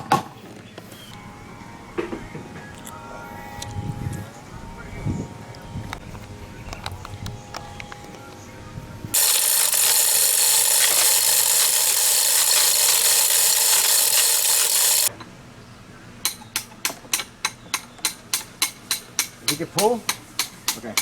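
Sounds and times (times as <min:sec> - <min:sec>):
power tool running: 0:09.1 - 0:15.1.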